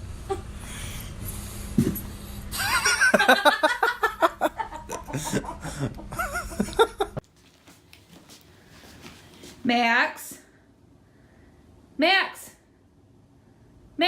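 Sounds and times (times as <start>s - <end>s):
person laughing in choppy bursts: 2.6s - 7.2s.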